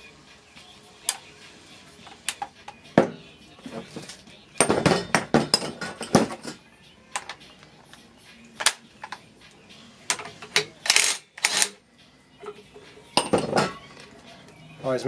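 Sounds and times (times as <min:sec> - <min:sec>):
hand tools clicking on steel: 0:10.1 - 0:11.8.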